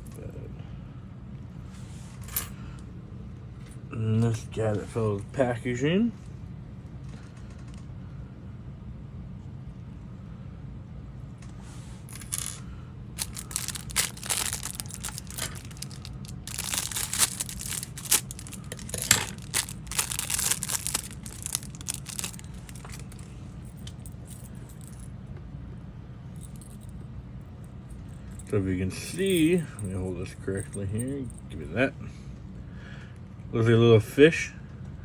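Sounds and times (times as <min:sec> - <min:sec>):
plastic packaging crinkling and tearing: 0:13.2 - 0:23.3.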